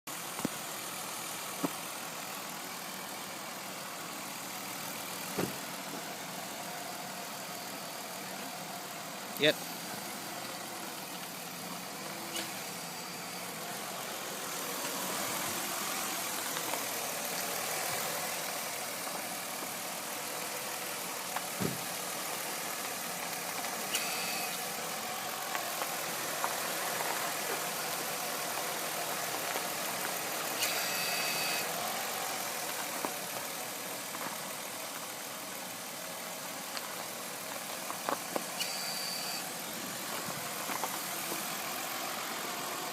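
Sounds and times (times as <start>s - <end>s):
car engine idling: 0.1s - 42.9s
high-pitched squeals: 30.6s - 31.7s, 38.6s - 39.5s.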